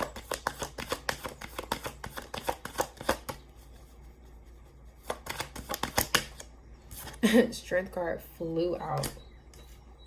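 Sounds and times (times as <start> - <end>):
cards being shuffled: 5.0 - 7.2.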